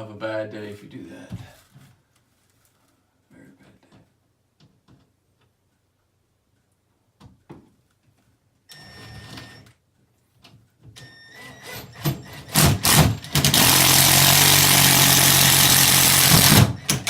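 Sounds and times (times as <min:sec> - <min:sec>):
power drill driving a screw: 0:11.3 - 0:17.0.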